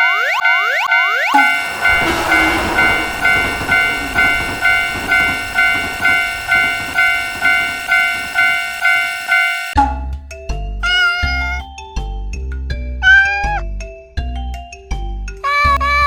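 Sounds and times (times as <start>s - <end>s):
railroad crossing bell ringing: 1.0s - 9.8s
train running past: 1.3s - 9.8s.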